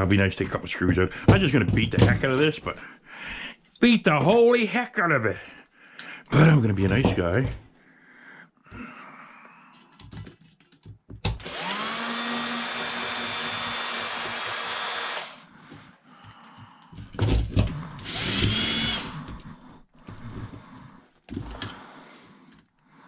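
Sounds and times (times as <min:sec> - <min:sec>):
cordless drill motor running: 0:11.4 - 0:15.5, 0:18.0 - 0:19.2.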